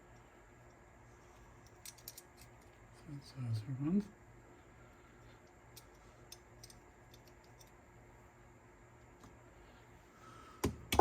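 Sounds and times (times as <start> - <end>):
faint clicks of small parts: 0.1 - 2.8, 5.2 - 7.8.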